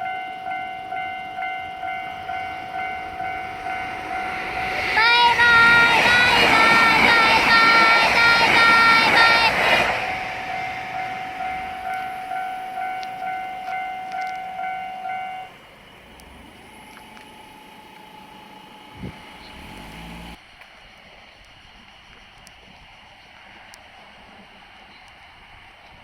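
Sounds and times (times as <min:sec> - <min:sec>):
level crossing alarm clanging: 0:00.0 - 0:20.1.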